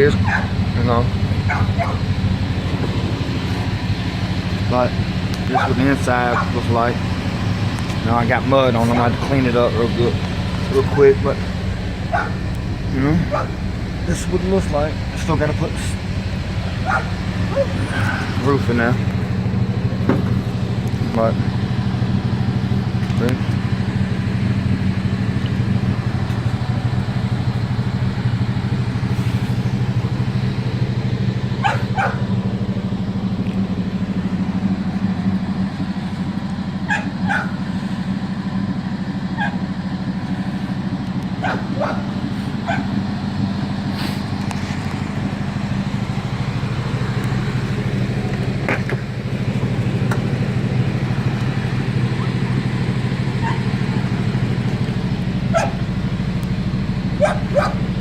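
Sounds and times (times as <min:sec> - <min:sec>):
car engine idling: 0:00.0 - 0:58.0
dog barking: 0:00.2 - 0:00.6, 0:01.4 - 0:02.1, 0:05.5 - 0:06.6, 0:12.1 - 0:12.4, 0:13.2 - 0:13.6, 0:16.8 - 0:18.2, 0:31.6 - 0:32.2, 0:36.9 - 0:37.6, 0:39.4 - 0:39.6, 0:41.4 - 0:43.0, 0:53.4 - 0:54.1, 0:55.5 - 0:55.8, 0:57.2 - 0:57.8.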